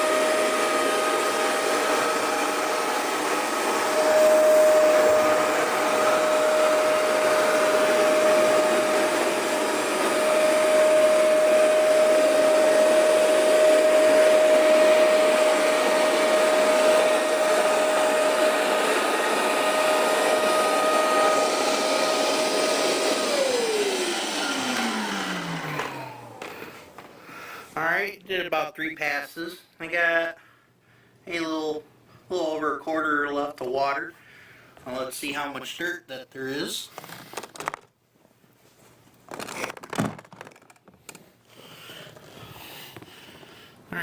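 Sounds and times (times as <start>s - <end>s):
carpet cleaner motor whine: 0.0s - 27.3s.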